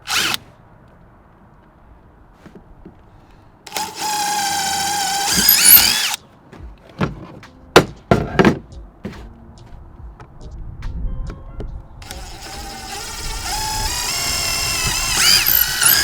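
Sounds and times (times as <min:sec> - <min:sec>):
cordless drill boring through wood: 0:00.0 - 0:00.4, 0:03.7 - 0:06.2, 0:12.0 - 0:16.0.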